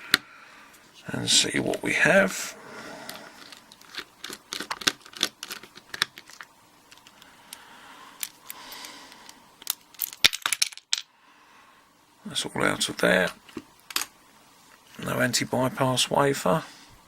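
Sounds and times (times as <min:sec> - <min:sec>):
padlock parts clicking and rattling: 0:03.4 - 0:07.2, 0:08.2 - 0:11.1, 0:13.5 - 0:14.1.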